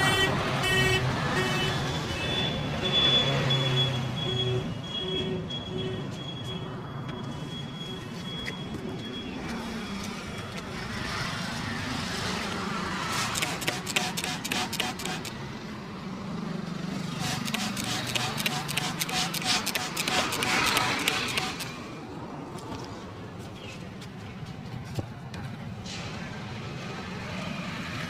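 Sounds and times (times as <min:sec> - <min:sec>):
passing vehicle noise: 0:00.0 - 0:28.0
low beep: 0:02.3 - 0:10.0
sharp clicks: 0:13.3 - 0:15.4, 0:17.3 - 0:21.8.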